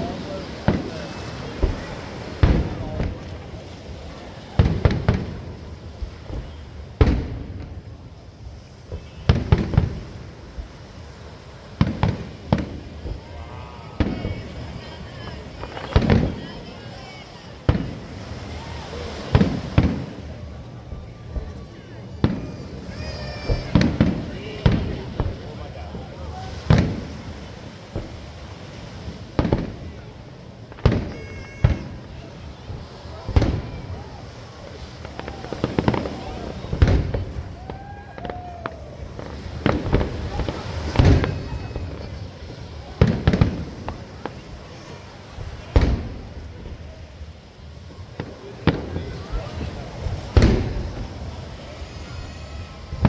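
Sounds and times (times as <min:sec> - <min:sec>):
fireworks exploding: 0:00.0 - 0:53.0
small firework pop: 0:35.0 - 0:42.1, 0:45.7 - 0:46.8, 0:50.3 - 0:51.1.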